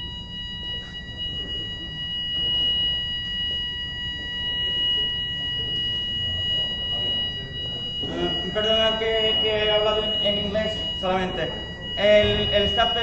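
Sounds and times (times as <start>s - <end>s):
fire alarm high-pitched tone: 0.0s - 13.0s.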